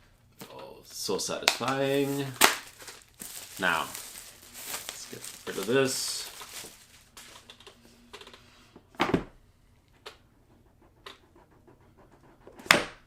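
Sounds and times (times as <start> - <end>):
packaging knock and rustle: 1.5 - 7.4.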